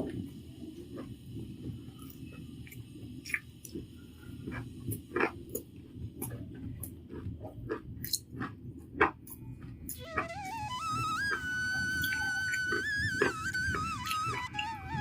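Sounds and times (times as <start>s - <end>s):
mouth clicks and smacks: 2.0s - 3.9s, 4.5s - 10.2s, 11.3s - 14.7s
person chewing food: 2.0s - 14.7s.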